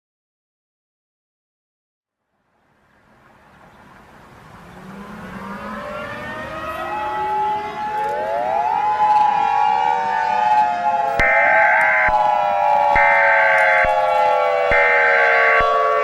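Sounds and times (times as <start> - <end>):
civil defense sirens wailing: 4.4 - 16.0.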